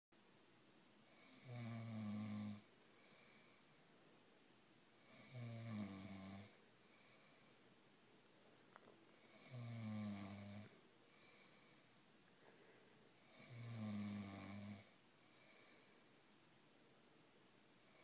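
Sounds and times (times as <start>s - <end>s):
man snoring: 1.1s - 2.7s, 5.0s - 6.6s, 9.3s - 10.8s, 13.2s - 15.0s.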